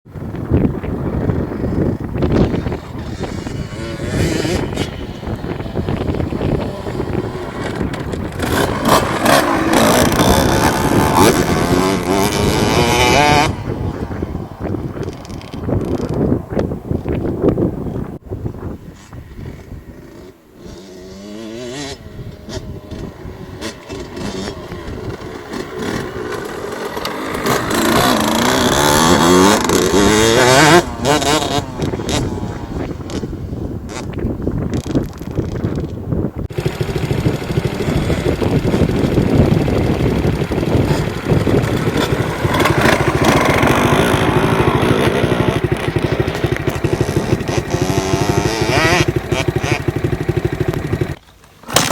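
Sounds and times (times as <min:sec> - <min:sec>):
two-stroke engine revving: 0:02.4 - 0:13.8, 0:20.0 - 0:33.3, 0:36.5 - 0:51.9.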